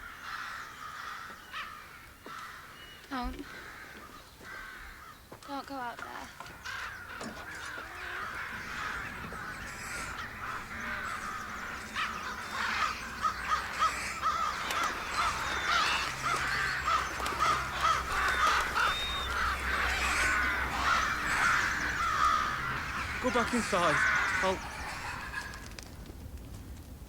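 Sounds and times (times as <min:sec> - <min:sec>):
crows cawing: 0:00.0 - 0:26.1.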